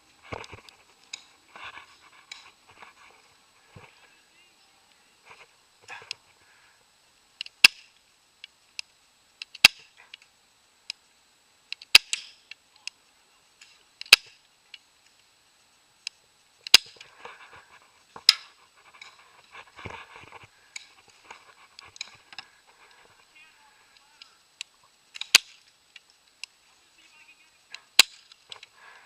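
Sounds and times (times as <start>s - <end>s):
rustling: 0.0s - 6.8s, 16.8s - 29.0s.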